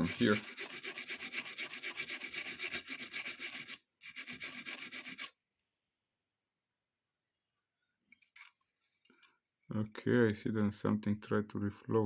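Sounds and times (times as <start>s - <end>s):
brush scrubbing circuit board: 0.0s - 5.4s.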